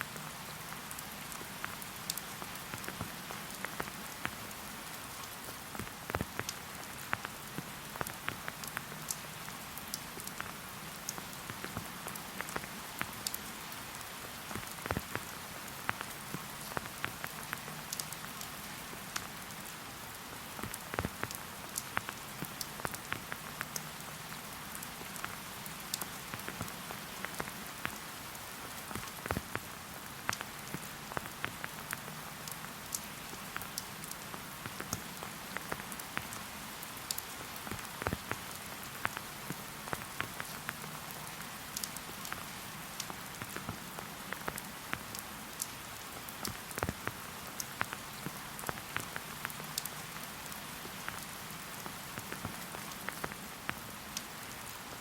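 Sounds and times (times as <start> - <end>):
steady rain hiss: 0.0 - 55.0
raindrop impacts: 5.8 - 13.4, 14.5 - 19.5, 20.6 - 28.0, 28.9 - 36.4, 37.1 - 45.7, 46.4 - 53.9.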